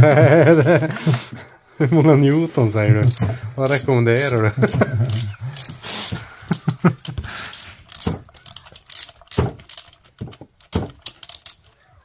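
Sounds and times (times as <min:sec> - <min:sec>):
ratchet wrench clicking: 0:03.0 - 0:06.2, 0:06.9 - 0:11.7.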